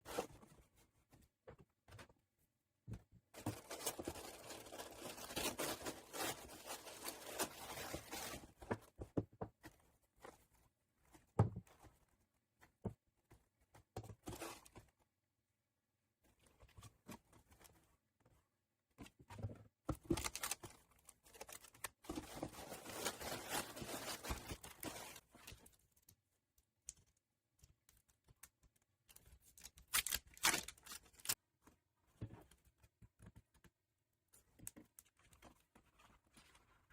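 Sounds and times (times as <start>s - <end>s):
paper rustling and tearing: 3.4s - 8.5s, 20.2s - 25.2s, 29.6s - 31.4s.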